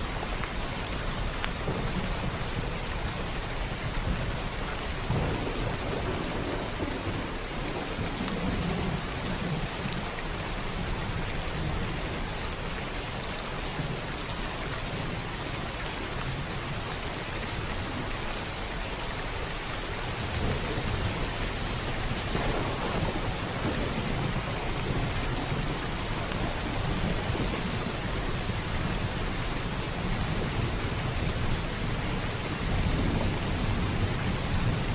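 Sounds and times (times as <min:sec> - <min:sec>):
heavy rain on a roof: 0:00.0 - 0:34.9
thunder rumbling: 0:00.3 - 0:12.4, 0:19.4 - 0:34.9.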